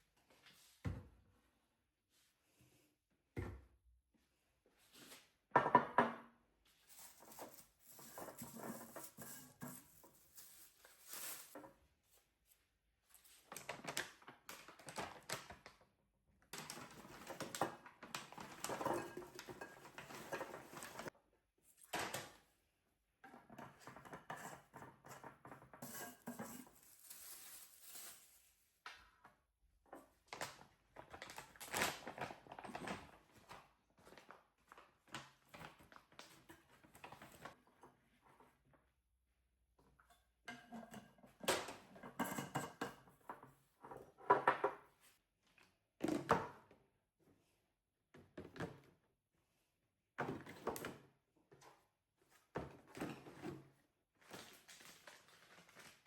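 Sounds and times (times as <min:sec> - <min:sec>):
objects clattering and knocking: 0:06.9 - 0:11.8, 0:16.6 - 0:21.2, 0:23.2 - 0:28.4, 0:39.8 - 0:44.9, 0:52.5 - 0:55.9.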